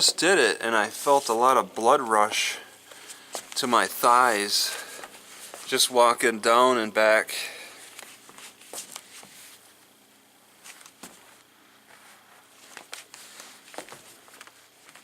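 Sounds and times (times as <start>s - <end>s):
soft footsteps: 2.9s - 5.8s, 7.8s - 9.8s, 10.6s - 15.0s
clothing rustling: 10.6s - 15.0s.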